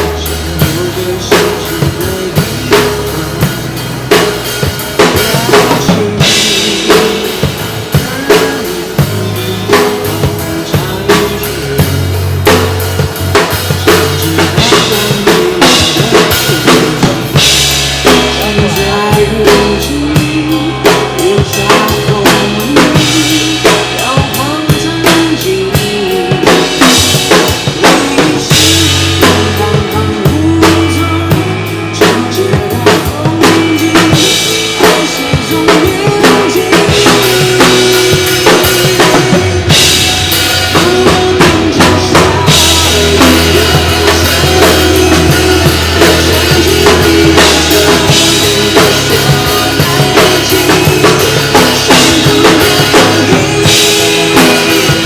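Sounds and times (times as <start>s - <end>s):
pop song with drum beat: 0.0s - 55.0s.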